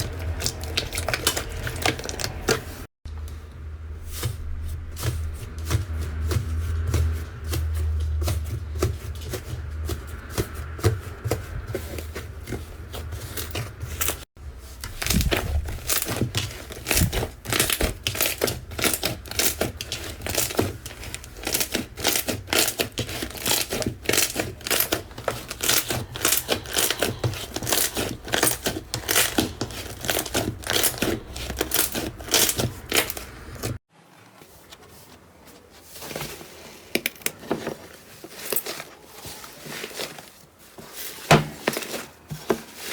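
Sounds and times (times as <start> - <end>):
slime crackling and popping: 0.0 - 2.8, 14.8 - 33.8.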